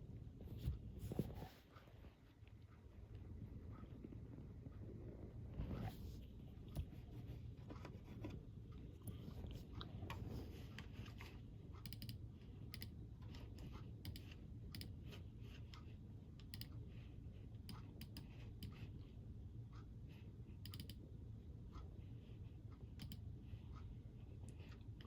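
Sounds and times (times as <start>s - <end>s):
steady low rumble: 0.0s - 7.7s.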